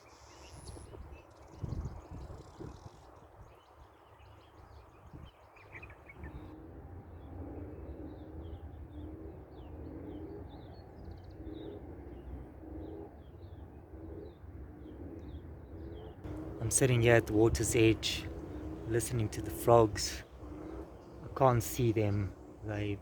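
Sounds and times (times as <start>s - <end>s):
frogs croaking: 16.3s - 23.0s
small birds chirping: 16.3s - 23.0s.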